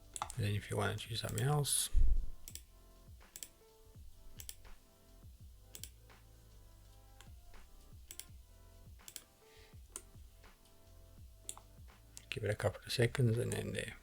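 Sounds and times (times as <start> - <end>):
soft background music with beat: 0.0 - 14.0
computer mouse clicks: 0.1 - 0.4, 1.2 - 1.5, 2.4 - 3.6, 4.4 - 4.8, 5.7 - 6.0, 8.0 - 8.3, 9.0 - 9.3, 9.9 - 10.7, 11.4 - 12.4.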